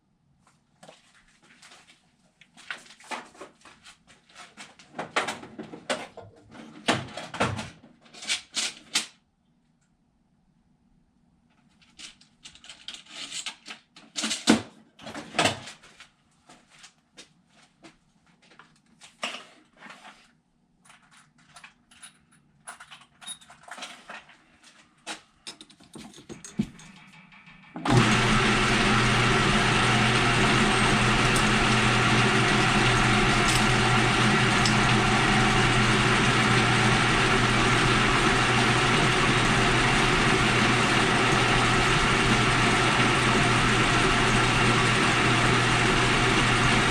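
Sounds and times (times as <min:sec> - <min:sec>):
metal tools clicking and knocking: 0:20.9 - 0:24.0, 0:25.4 - 0:27.7
lathe motor humming: 0:27.8 - 0:46.9.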